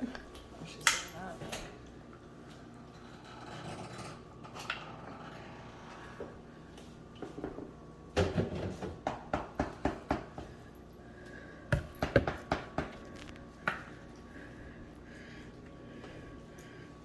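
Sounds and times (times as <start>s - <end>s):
kitchenware knocks and clicks: 7.4s - 10.5s, 11.7s - 13.1s.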